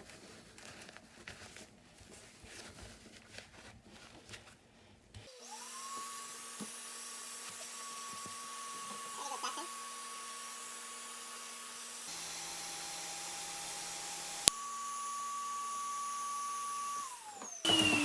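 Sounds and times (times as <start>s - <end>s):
vacuum cleaner motor whine: 5.2s - 18.0s.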